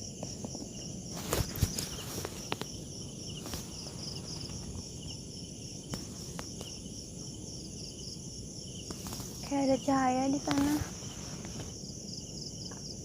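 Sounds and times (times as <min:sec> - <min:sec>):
crickets and insects chirping: 0:00.0 - 0:13.0.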